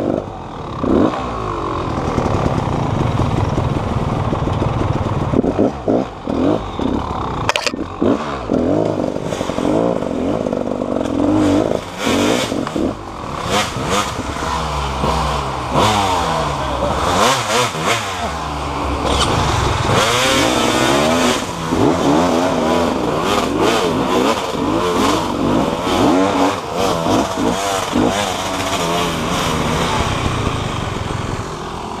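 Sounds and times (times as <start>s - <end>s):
motorcycle engine revving: 0.0s - 32.0s
clattering: 7.4s - 7.8s.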